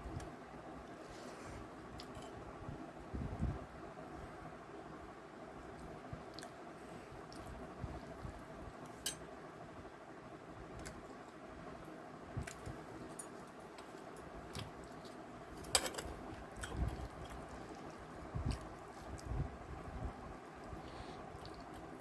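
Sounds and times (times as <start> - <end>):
low steady hum: 0.0 - 22.0
person chewing food: 16.3 - 19.4, 20.6 - 22.0.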